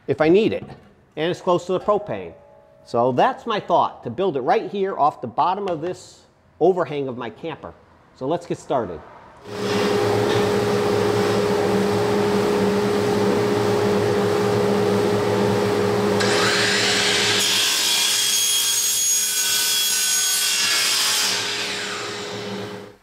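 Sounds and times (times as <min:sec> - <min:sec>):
power tool motor hum: 0:09.4 - 0:18.3, 0:21.3 - 0:23.0.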